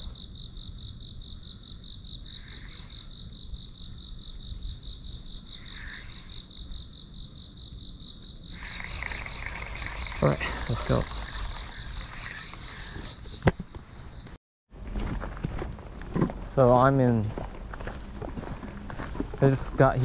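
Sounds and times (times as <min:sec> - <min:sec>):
insect trilling: 0:00.0 - 0:14.2.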